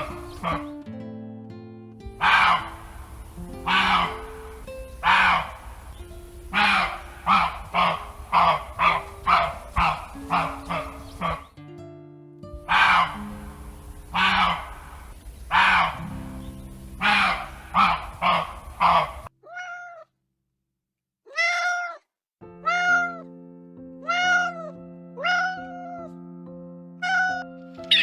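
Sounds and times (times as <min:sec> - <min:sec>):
dog barking: 0:00.0 - 0:00.7, 0:02.2 - 0:02.8, 0:03.6 - 0:04.4, 0:05.0 - 0:05.7, 0:06.5 - 0:11.5, 0:12.6 - 0:13.3, 0:14.1 - 0:16.1, 0:17.0 - 0:19.9
background music: 0:00.0 - 0:18.5, 0:22.5 - 0:28.0
cat meowing: 0:02.2 - 0:02.8, 0:03.6 - 0:05.6, 0:12.7 - 0:13.2, 0:17.0 - 0:20.1, 0:21.3 - 0:23.3, 0:24.0 - 0:26.2, 0:27.0 - 0:28.0.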